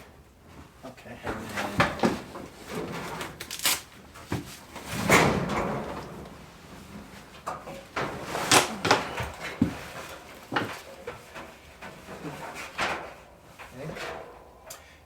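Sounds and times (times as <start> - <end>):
dryer drum clunking in metal cabinet: 4.8 - 6.6.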